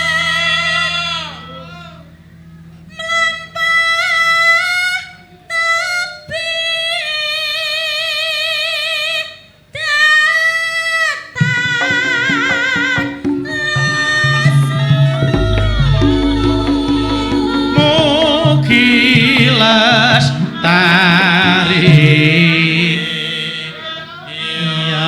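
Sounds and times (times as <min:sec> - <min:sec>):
woman singing with vibrato: 0:00.0 - 0:02.1, 0:02.9 - 0:25.0
gamelan instruments: 0:11.4 - 0:19.7.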